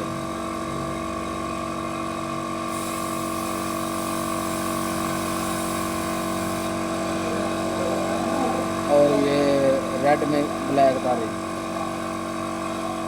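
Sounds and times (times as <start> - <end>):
mechanical whine and hum: 0.0 - 13.0
hiss: 2.7 - 7.0.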